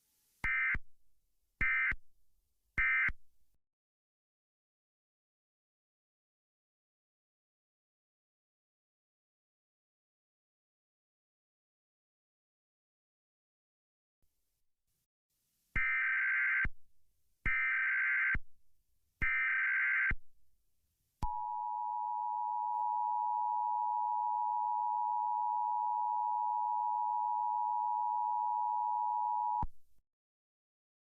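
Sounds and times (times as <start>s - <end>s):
steady two-tone alert signal: 21.2s - 29.7s.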